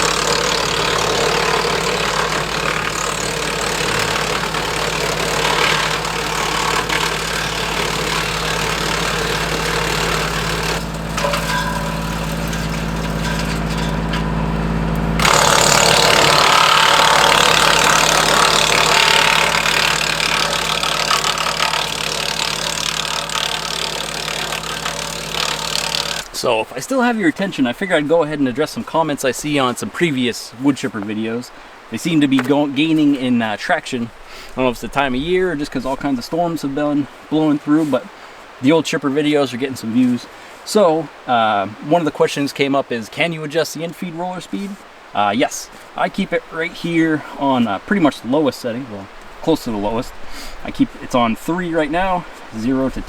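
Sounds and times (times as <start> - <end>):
tractor diesel engine running: 0.0 - 26.4
wood chipper: 0.0 - 26.5.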